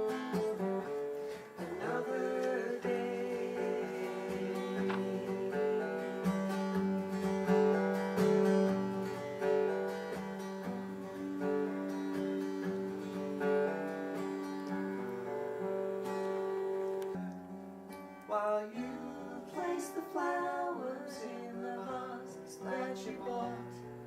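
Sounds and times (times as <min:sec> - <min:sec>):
acoustic guitar playing: 0:00.0 - 0:24.0.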